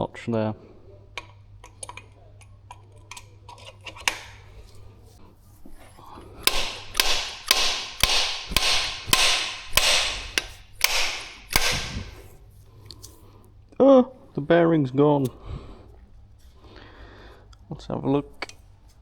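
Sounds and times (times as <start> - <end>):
tool handling clicks: 1.2 - 4.8, 5.7 - 13.2
metal-on-metal hammering: 5.8 - 12.3.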